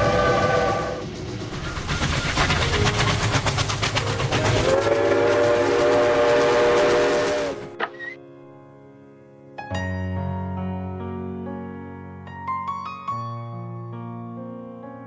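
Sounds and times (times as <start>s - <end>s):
train horn: 0.0s - 1.1s, 4.4s - 7.8s
train wheels clattering: 0.9s - 7.7s.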